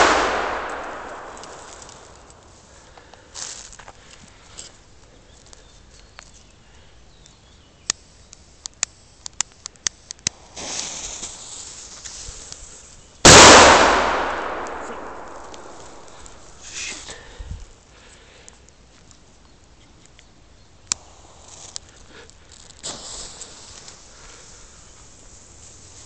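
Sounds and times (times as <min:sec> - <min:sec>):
firecracker bang with echo: 0:00.0 - 0:02.3, 0:13.3 - 0:16.4.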